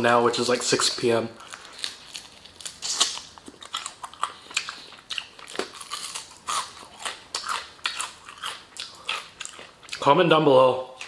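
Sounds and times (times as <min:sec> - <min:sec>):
crunchy chewing: 0:01.4 - 0:10.0.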